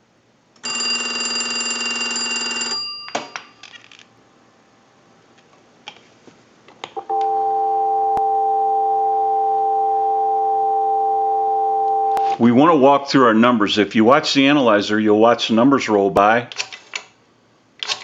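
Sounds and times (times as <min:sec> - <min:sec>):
telephone dial tone: 0:00.6 - 0:02.9, 0:07.0 - 0:12.4
telephone bell ringing: 0:00.6 - 0:03.3, 0:07.1 - 0:12.4.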